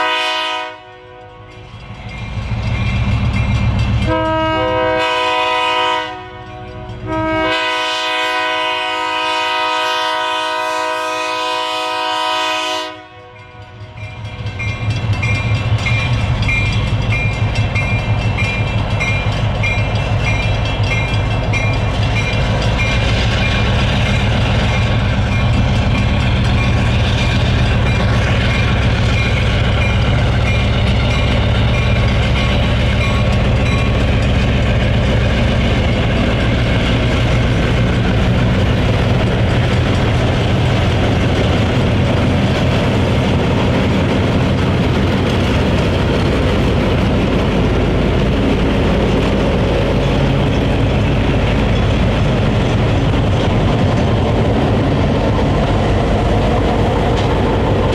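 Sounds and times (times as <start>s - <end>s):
locomotive air horn blasts: 0.0s - 1.5s, 4.0s - 13.8s
train wheels on rails: 0.0s - 57.9s.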